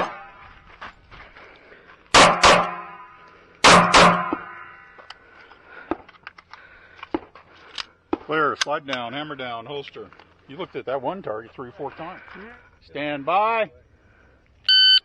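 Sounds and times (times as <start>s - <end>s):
pistol shots: 2.1s - 3.0s, 3.6s - 4.6s.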